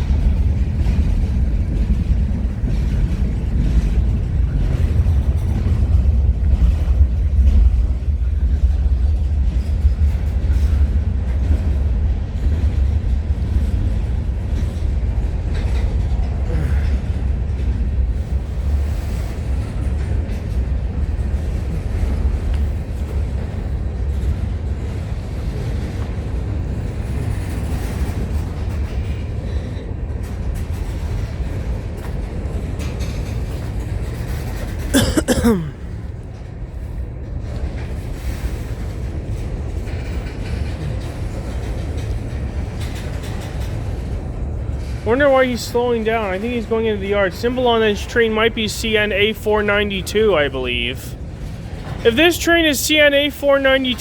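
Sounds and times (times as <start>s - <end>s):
freight train rumbling on rails: 0.0s - 54.0s.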